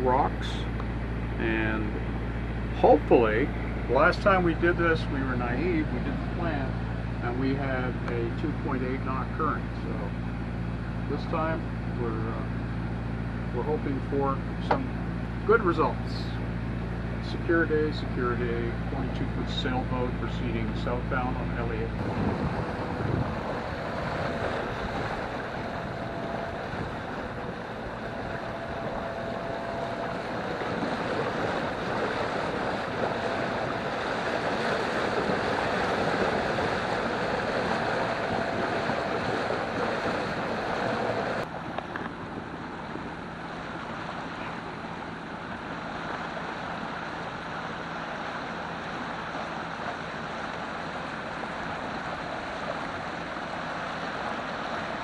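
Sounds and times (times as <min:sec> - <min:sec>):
engine hum: 0:00.0 - 0:55.0
water rushing along hull: 0:00.0 - 0:55.0
wind on microphone: 0:21.9 - 0:43.1.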